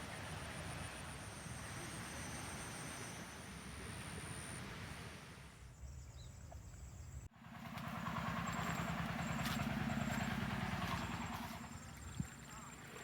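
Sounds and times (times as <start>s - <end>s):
motor engine throbbing: 7.3s - 12.2s.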